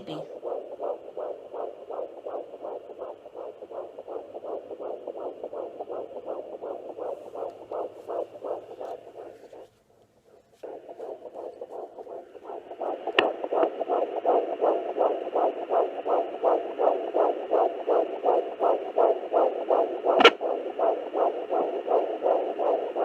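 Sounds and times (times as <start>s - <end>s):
pulsing heartbeat whoosh: 0.0s - 9.7s, 10.6s - 23.0s
faint static hiss: 0.0s - 23.0s.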